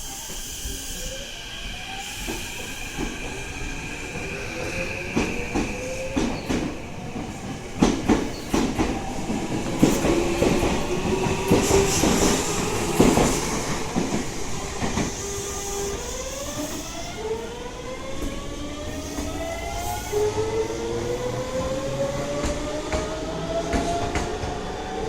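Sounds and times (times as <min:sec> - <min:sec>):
train wheels clicking over rail joints: 0:05.0 - 0:15.3.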